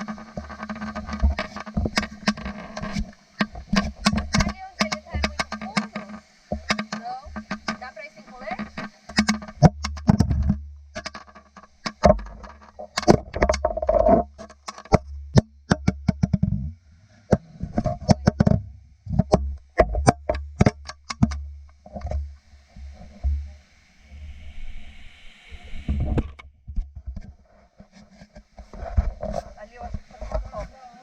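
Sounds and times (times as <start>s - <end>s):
sharp clicks and knocks: 0.0s - 16.7s, 17.3s - 23.5s.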